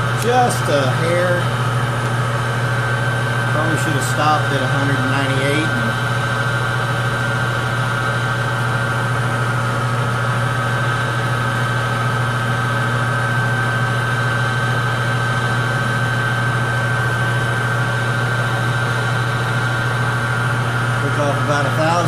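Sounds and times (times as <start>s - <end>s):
high whine: 0.0s - 12.8s
lathe motor hum: 0.0s - 22.0s.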